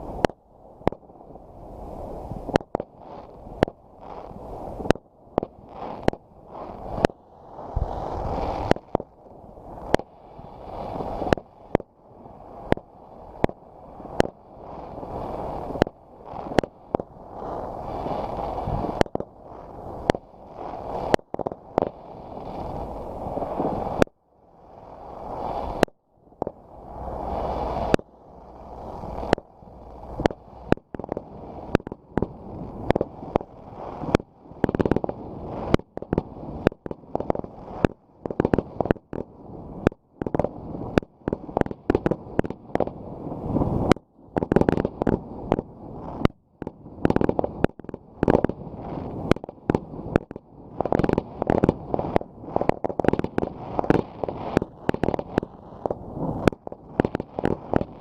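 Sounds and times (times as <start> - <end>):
rumble and crackle of explosions: 0.0 - 58.0
fireworks bangs: 12.6 - 24.1, 25.2 - 58.0.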